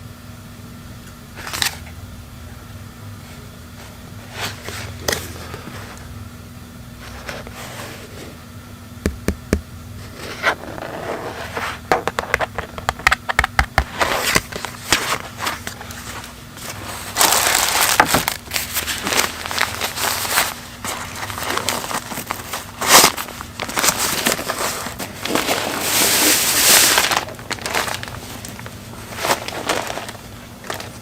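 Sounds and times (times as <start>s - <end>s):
rustling: 14.0s - 31.0s.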